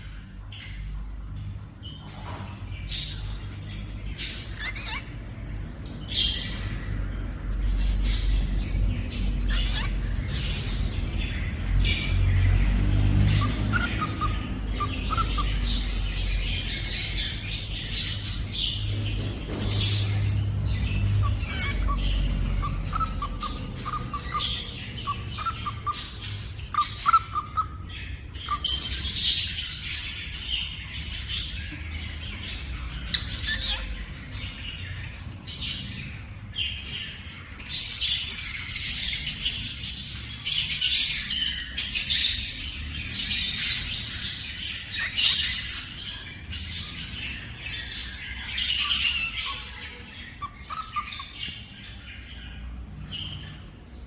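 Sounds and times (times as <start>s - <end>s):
parrots chirping and squawking: 0.0s - 54.0s.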